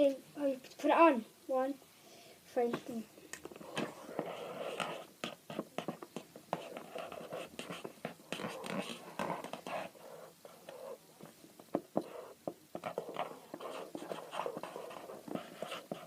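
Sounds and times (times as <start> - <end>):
pens scratching on paper: 3.4 - 16.0.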